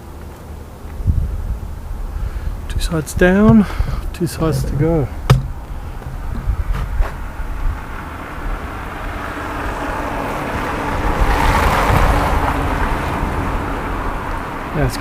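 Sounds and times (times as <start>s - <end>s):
wind buffeting microphone: 0.9s - 10.0s.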